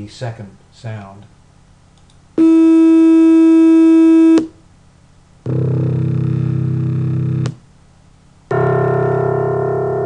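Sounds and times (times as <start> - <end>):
low synthesized piano tone: 8.5 - 10.0.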